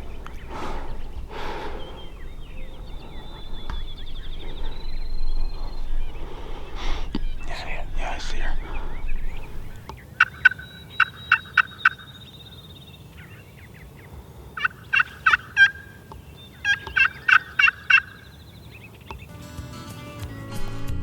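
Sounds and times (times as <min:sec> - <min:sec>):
turkey yelping: 0:10.2 - 0:12.1, 0:14.6 - 0:16.0, 0:16.6 - 0:18.2.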